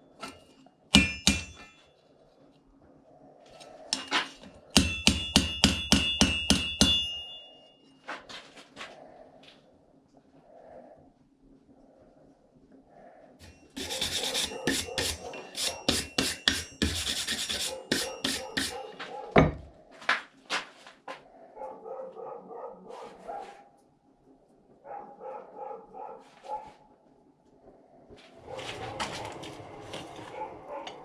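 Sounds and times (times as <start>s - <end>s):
metal scraping strokes: 0.1s - 0.6s, 13.4s - 19.0s.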